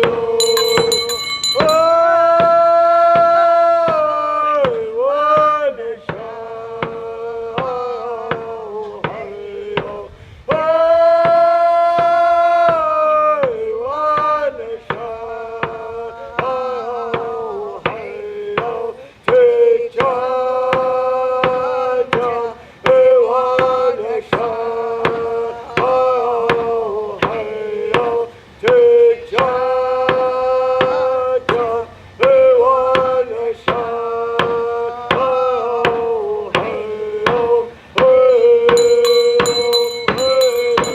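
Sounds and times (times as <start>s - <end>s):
drum beating steadily: 0.0s - 4.9s, 35.2s - 40.9s
person chanting in high voice: 33.8s - 40.9s.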